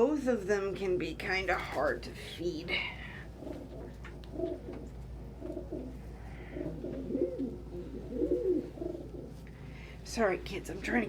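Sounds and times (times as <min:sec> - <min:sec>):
pigeons cooing: 0:03.1 - 0:09.7.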